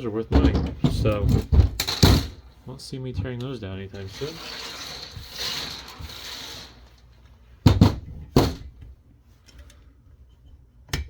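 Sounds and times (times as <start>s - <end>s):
scraping and handling noise: 0.0s - 10.7s.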